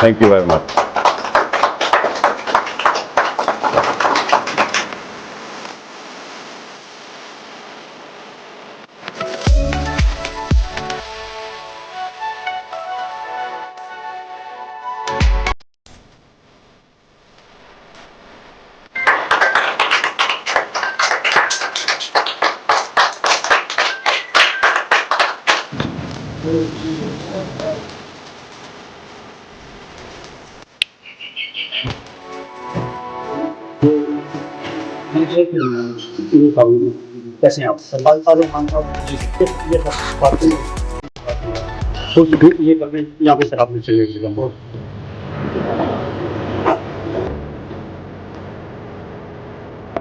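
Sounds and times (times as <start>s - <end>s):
hands clapping quickly: 0.0s - 5.0s, 19.0s - 25.7s
steady hiss: 17.2s - 30.8s.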